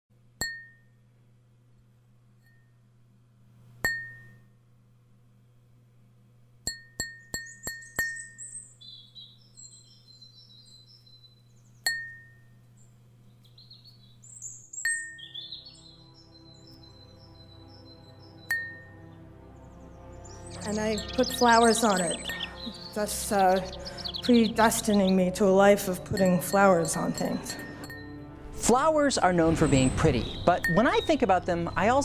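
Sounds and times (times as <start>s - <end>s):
bird chirps: 7.2s - 28.3s, 29.5s - 32.0s
glass clinks: 26.1s - 28.1s.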